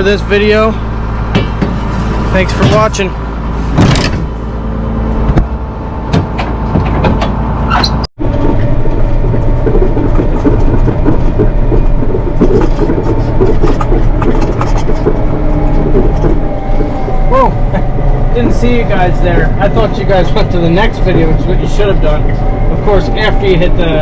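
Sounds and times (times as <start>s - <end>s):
tractor engine running: 0.0s - 24.0s.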